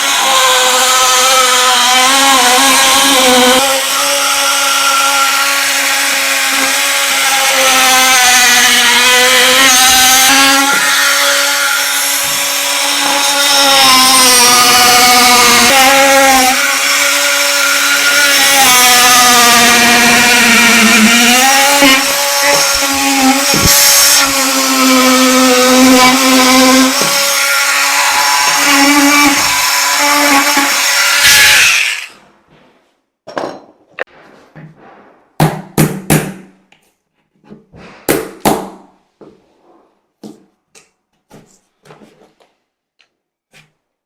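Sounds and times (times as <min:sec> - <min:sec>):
power tool cutting: 0:00.0 - 0:32.2.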